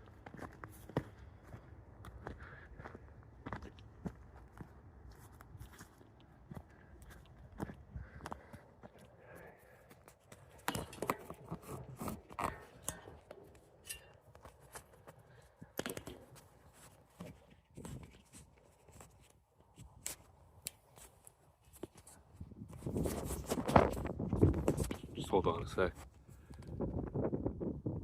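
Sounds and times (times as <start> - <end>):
crunches: 9.2 - 25.2
scrapes: 10.3 - 15.1.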